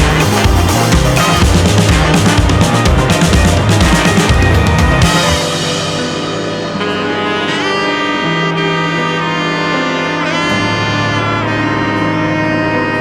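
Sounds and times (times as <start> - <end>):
sustained bass line: 0.0 - 8.3
horn-like melody: 0.0 - 13.0.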